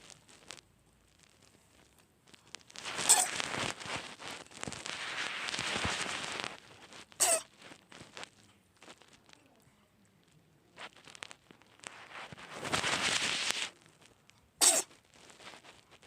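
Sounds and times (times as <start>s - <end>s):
hissy noise: 2.4s - 8.3s, 10.6s - 14.0s, 14.6s - 16.0s
cat sneezing: 3.0s - 3.4s, 7.2s - 7.5s, 14.6s - 15.0s.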